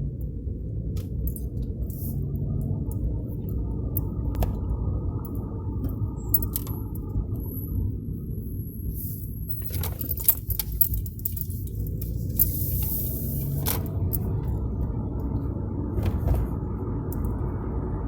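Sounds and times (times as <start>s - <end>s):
low rumble of moving car: 0.0s - 18.0s
rattling clicks: 0.9s - 7.2s, 9.5s - 15.3s.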